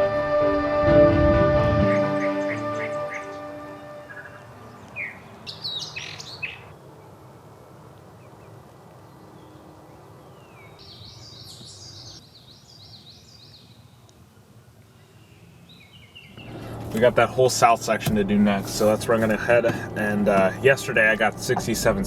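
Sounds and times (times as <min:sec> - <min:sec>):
bird song of rapid slurred notes: 0:01.9 - 0:06.7
small birds chirping: 0:02.2 - 0:06.8, 0:08.2 - 0:14.2, 0:14.9 - 0:17.7
low background rumble: 0:16.4 - 0:22.0.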